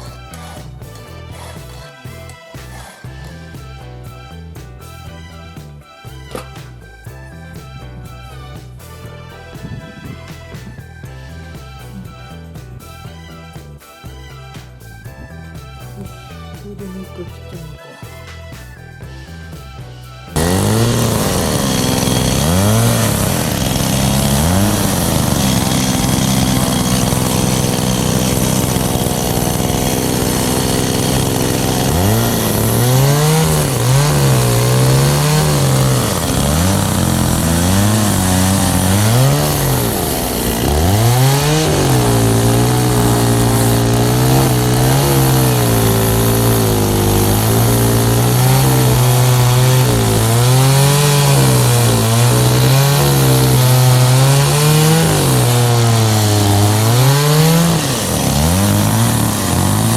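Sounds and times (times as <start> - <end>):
chainsaw revving: 20.4 - 59.9.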